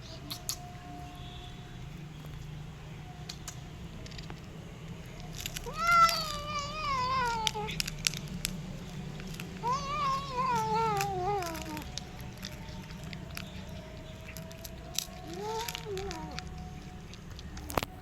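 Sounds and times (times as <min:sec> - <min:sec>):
cat eating clicks: 0:03.2 - 0:18.0
cat meowing: 0:05.6 - 0:17.2.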